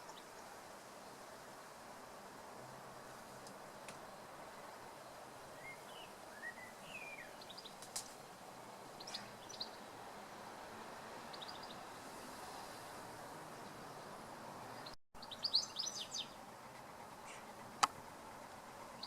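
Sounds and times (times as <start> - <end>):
birds whistling and chirping: 5.6 - 7.8, 15.2 - 16.4.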